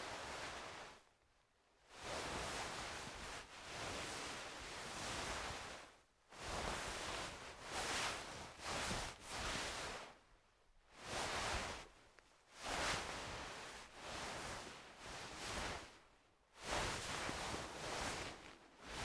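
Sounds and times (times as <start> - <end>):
fabric rustling: 16.8 - 19.0.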